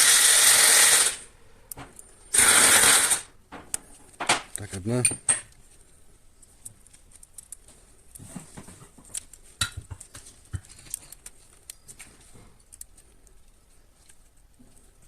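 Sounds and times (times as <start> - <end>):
small metal parts clicking: 6.4 - 8.2, 9.1 - 15.0.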